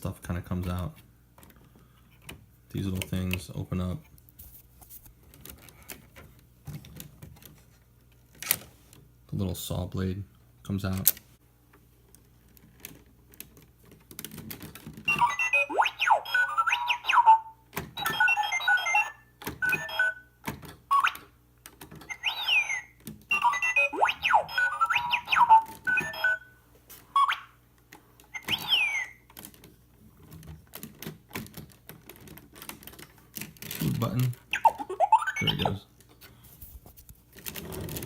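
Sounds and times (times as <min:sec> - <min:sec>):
robot beeps and whistles from speaker: 0:15.1 - 0:20.2, 0:20.9 - 0:21.3, 0:22.1 - 0:26.4, 0:27.2 - 0:27.5, 0:28.4 - 0:29.2, 0:34.6 - 0:35.8.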